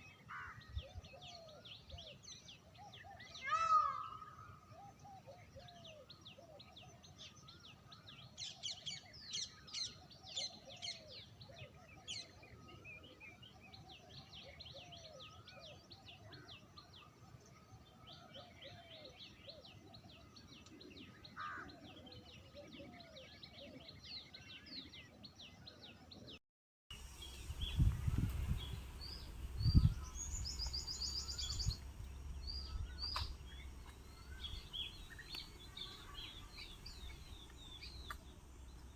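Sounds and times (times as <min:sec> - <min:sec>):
birds chirping: 0:26.9 - 0:38.9
low rumbling thumps: 0:26.9 - 0:38.9.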